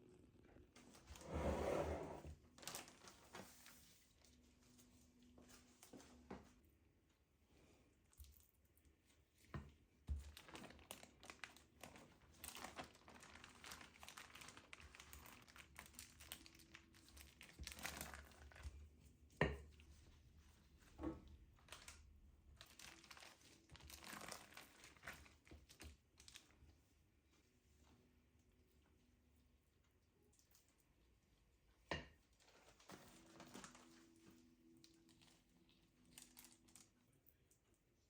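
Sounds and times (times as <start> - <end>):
packaging crinkling and rustling: 2.4 - 6.2, 10.2 - 18.7, 21.6 - 26.6, 32.4 - 37.0.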